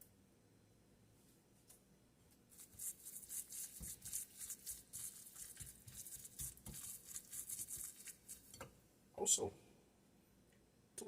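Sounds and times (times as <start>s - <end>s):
ingredients rustling and crackling: 2.5s - 8.6s.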